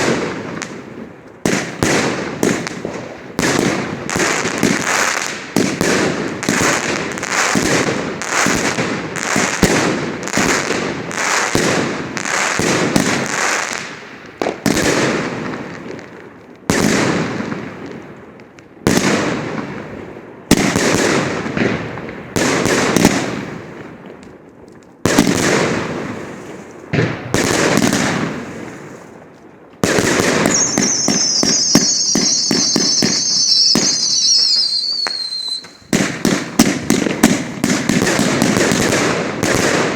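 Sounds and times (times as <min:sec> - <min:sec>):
fireworks bangs with crackling: 0:00.0 - 0:39.9
high falling firework whistle: 0:30.3 - 0:35.9.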